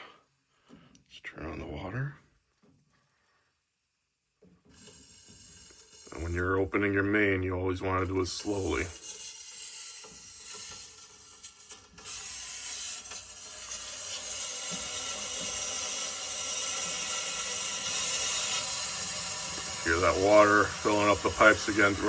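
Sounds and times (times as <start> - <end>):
water hissing through pipes: 4.7 - 22.0.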